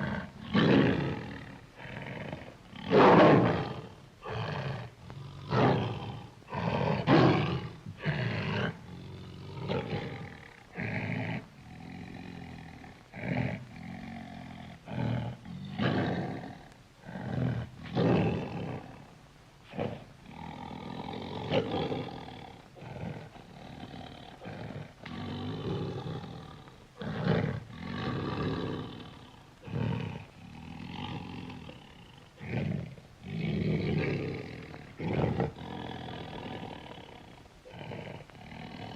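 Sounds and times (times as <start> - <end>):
bear roaring and growling: 0.0 - 19.1, 19.7 - 38.9.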